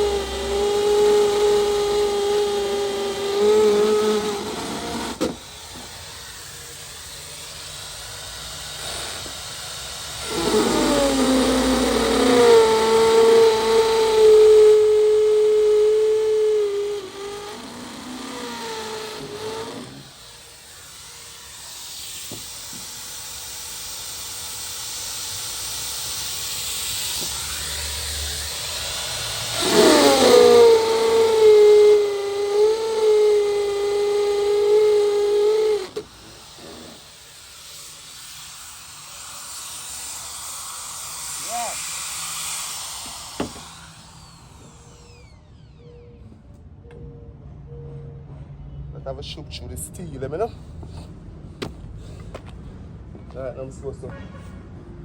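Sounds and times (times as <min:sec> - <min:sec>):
small electric motor whining: 0:00.0 - 0:46.4
rising hiss: 0:10.2 - 0:20.2, 0:21.5 - 0:46.0.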